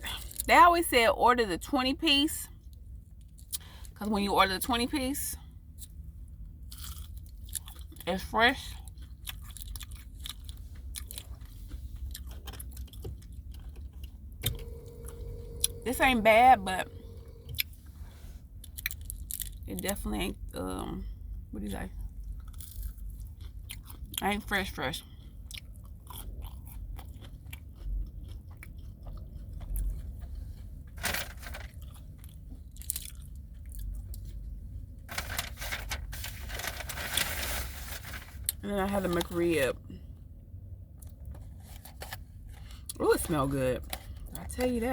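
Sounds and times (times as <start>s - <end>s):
low steady hum: 0.0s - 44.9s
chewing crunchy food: 6.6s - 14.4s, 22.2s - 31.0s, 31.7s - 34.4s.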